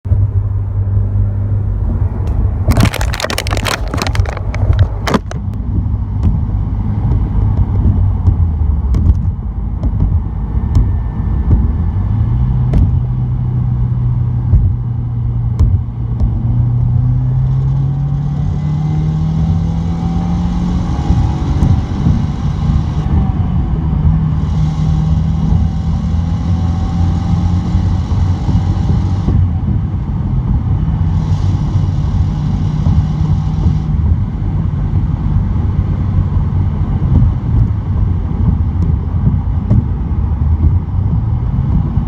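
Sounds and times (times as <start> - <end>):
turbocharged engine accelerating: 0.1 - 42.0
loud rattling: 2.7 - 5.5.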